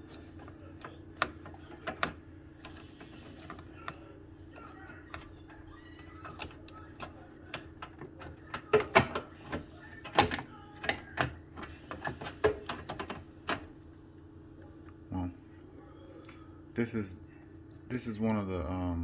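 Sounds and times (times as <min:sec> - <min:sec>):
plastic clicks and knocks: 0:06.2 - 0:13.7.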